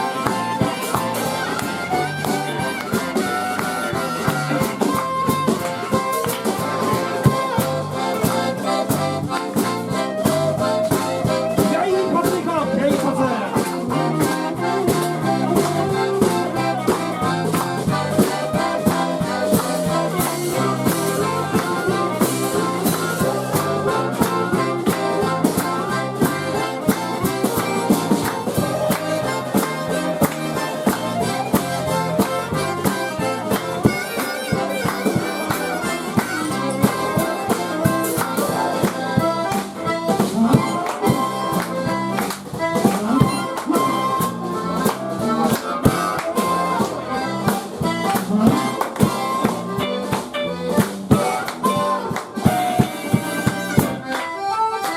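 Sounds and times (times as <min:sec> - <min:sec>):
harmonica and accordion lead: 0:00.0 - 0:54.9
live band instrumental: 0:00.0 - 0:54.9.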